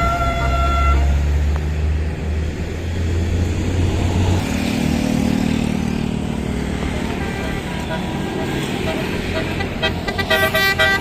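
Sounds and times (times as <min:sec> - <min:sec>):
bus horn: 0:00.0 - 0:01.4, 0:06.8 - 0:11.0
bus engine droning: 0:00.0 - 0:11.0
vehicle hum: 0:00.0 - 0:11.0.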